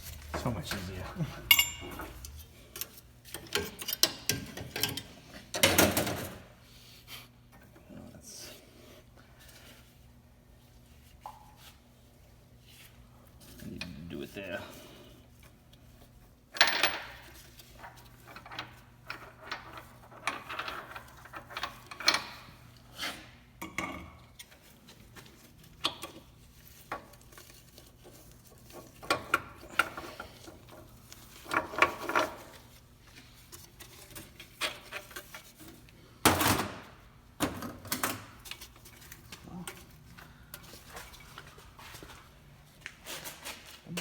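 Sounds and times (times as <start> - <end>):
metal tools clinking: 0.4 - 5.1.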